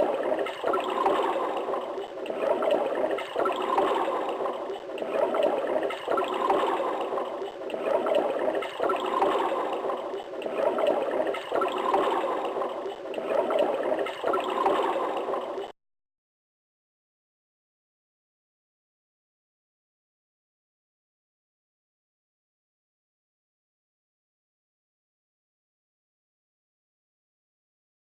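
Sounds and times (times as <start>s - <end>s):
toilet water rushing and gurgling: 0.0s - 15.7s.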